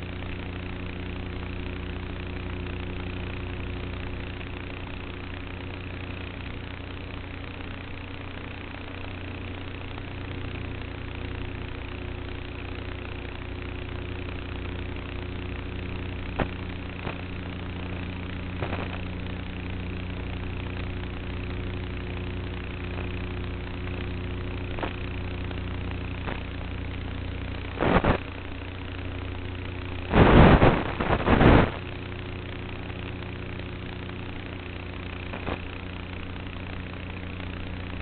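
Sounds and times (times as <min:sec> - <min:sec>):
loud noisy bursts: 0:16.3 - 0:20.3, 0:24.6 - 0:36.2.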